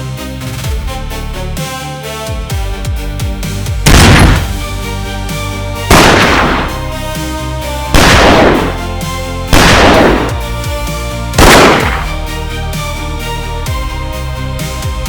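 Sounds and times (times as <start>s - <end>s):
electronic background music: 0.0s - 15.0s
gunshots with reverberation: 3.8s - 4.9s, 5.9s - 7.0s, 7.9s - 10.6s, 11.4s - 12.3s.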